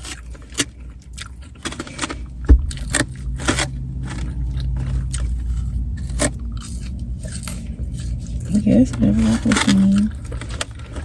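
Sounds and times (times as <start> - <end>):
crunchy bites of fried food: 0.0 - 8.4
steady low hum: 0.0 - 11.0.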